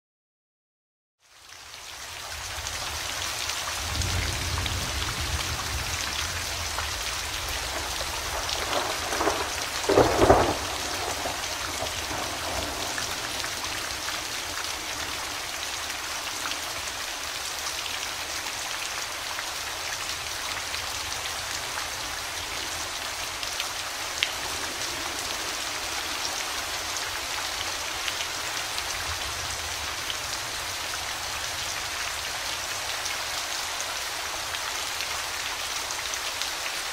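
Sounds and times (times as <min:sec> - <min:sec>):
steady rain: 0:01.2 - 0:36.9
low thunder rumble: 0:03.8 - 0:15.4
crackling thunderclap: 0:03.8 - 0:15.5.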